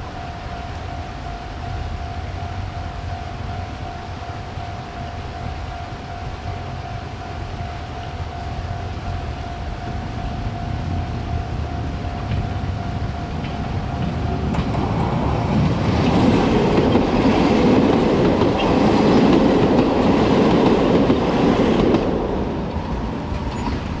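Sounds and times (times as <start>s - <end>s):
crossing warning signal tone: 0.0s - 22.0s
train wheels clattering over rails: 12.2s - 24.0s.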